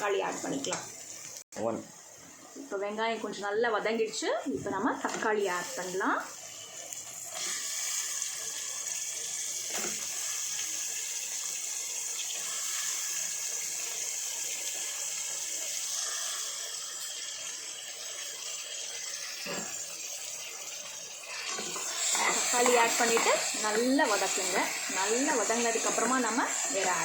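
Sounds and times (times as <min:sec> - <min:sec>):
onions sizzling in a pan: 0:00.0 - 0:27.0.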